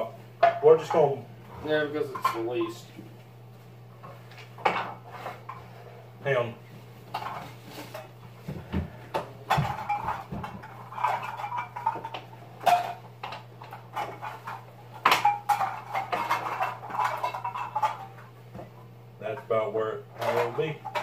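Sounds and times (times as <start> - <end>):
empty cans clattering: 9.2 - 18.3, 20.2 - 21.0.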